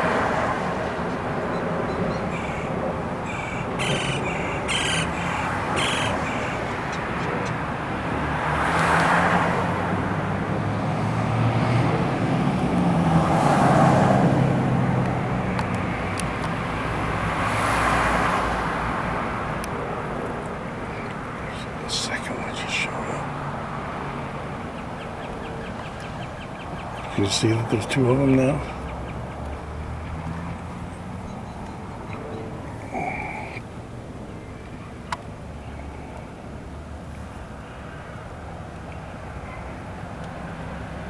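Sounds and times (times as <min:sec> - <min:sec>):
traffic hum: 0:00.0 - 0:41.0
vehicles passing: 0:00.0 - 0:41.0
bird calling: 0:01.9 - 0:07.7, 0:24.7 - 0:33.6.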